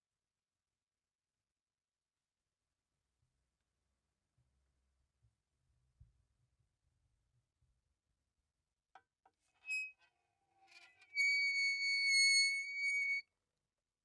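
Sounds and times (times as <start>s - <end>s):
metal door hinge squeaking: 10.7s - 13.2s.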